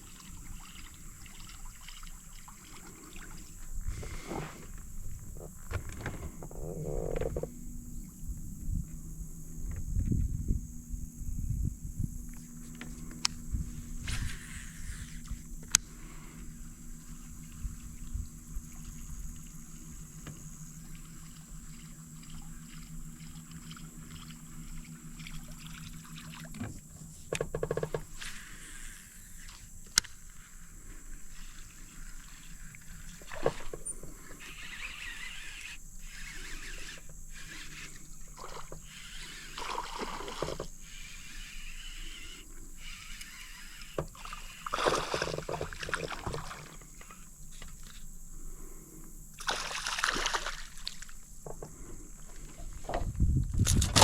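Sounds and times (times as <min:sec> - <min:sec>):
water sloshing: 0:00.0 - 0:07.5, 0:12.3 - 0:28.6, 0:43.1 - 0:47.9, 0:49.4 - 0:54.0
boat motor humming: 0:00.0 - 0:54.0.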